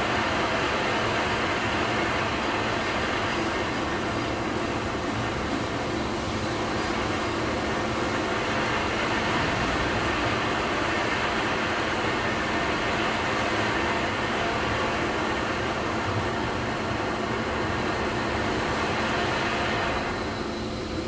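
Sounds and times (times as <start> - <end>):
machinery rushing drone: 7.6 - 12.4.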